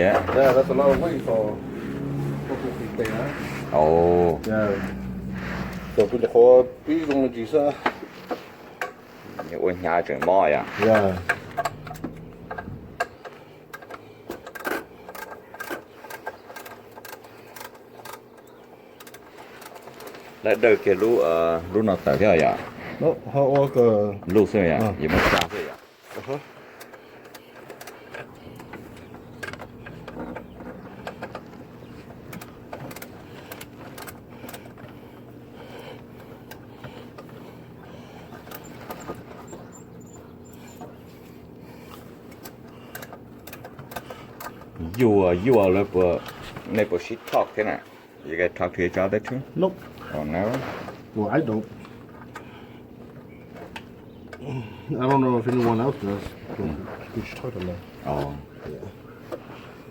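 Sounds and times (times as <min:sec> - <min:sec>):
hand tools clicking and knocking: 0:00.0 - 0:02.2, 0:02.9 - 0:22.5, 0:26.2 - 0:47.9
low hum: 0:00.0 - 0:09.4.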